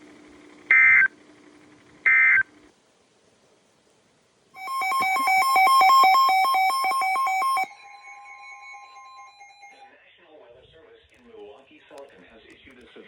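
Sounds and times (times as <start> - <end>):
bright electronic synthesizer tones: 4.6 - 9.8.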